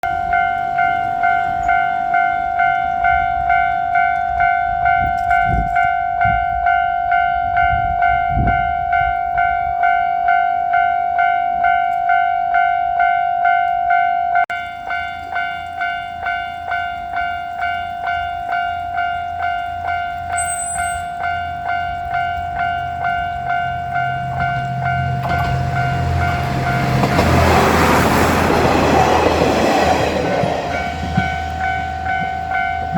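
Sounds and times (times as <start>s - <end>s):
railroad crossing bell ringing: 0.0s - 32.9s
train engine and wheels: 0.0s - 32.9s.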